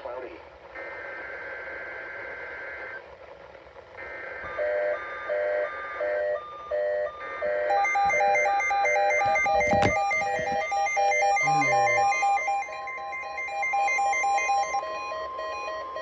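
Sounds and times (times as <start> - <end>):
data-burst tones: 7.7 - 14.8
two-note alarm beep: 7.7 - 16.0.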